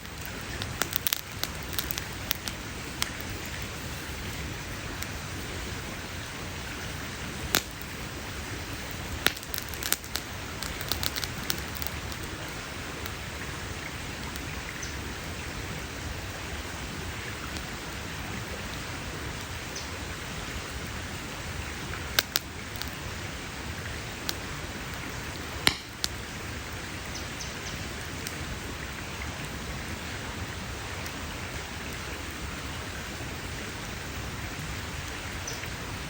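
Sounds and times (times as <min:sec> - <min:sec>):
sharp pops of burning wood: 0:00.0 - 0:03.9, 0:07.4 - 0:08.1, 0:08.7 - 0:12.4, 0:22.1 - 0:23.0, 0:25.4 - 0:26.3
campfire crackling: 0:00.0 - 0:36.0.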